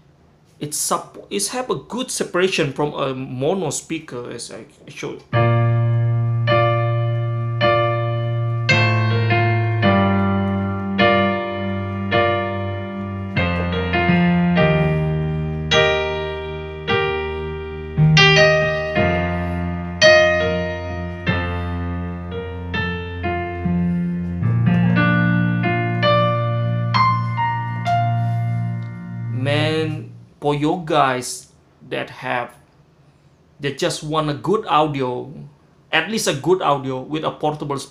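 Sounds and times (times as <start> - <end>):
slow piano chords: 5.2 - 30.4.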